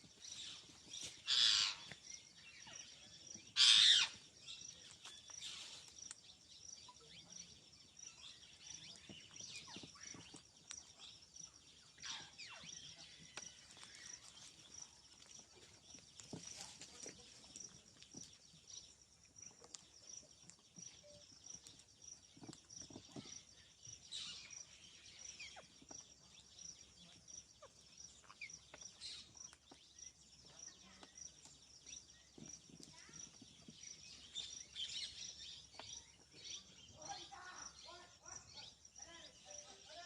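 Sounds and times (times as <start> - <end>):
thin high pulsing chirps: 20.2 - 21.6.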